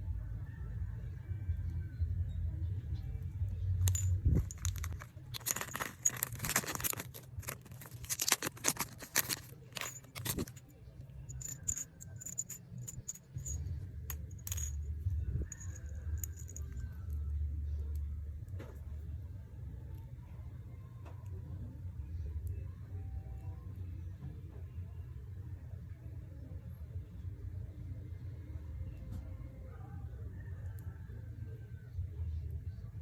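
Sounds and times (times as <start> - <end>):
small hard pieces rattling: 3.8 - 10.6, 11.3 - 14.9, 15.5 - 17.2
plastic packages crinkling: 3.9 - 10.5.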